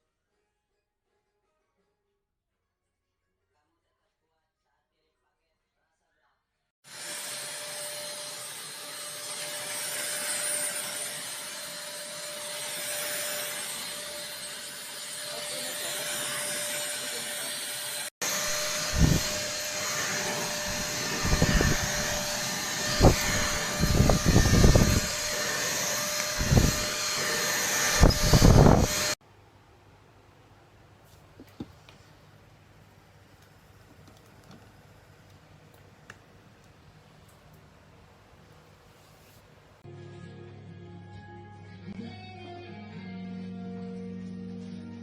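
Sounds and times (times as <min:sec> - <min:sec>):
handheld vacuum cleaner whining: 0:06.9 - 0:29.2.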